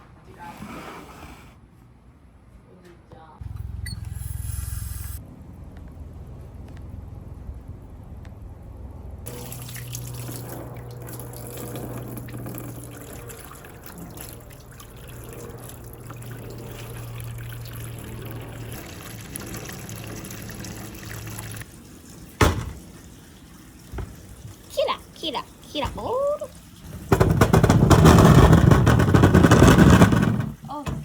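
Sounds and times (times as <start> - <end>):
low steady hum: 1.7 - 27.1
water trickling through channels: 9.3 - 27.1.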